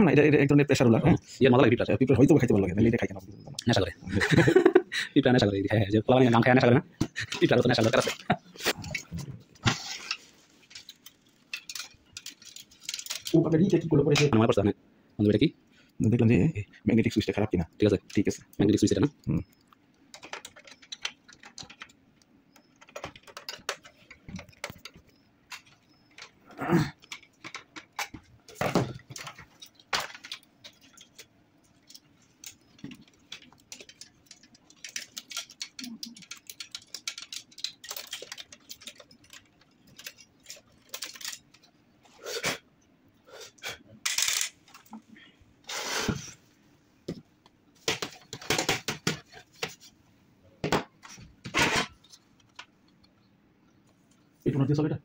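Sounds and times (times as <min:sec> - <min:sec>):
small parts clicking and clattering: 0:06.3 - 0:14.5, 0:17.0 - 0:42.1, 0:44.0 - 0:45.1, 0:47.1 - 0:49.9.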